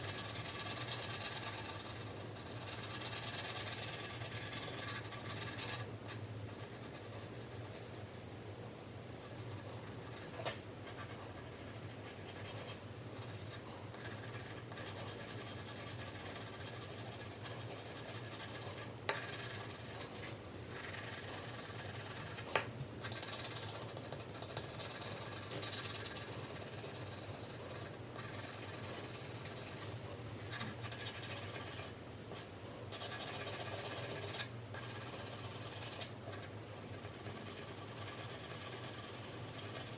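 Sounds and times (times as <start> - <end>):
pencil shading on paper: 0.0 - 5.8, 20.8 - 22.4, 23.1 - 29.9, 30.5 - 39.9.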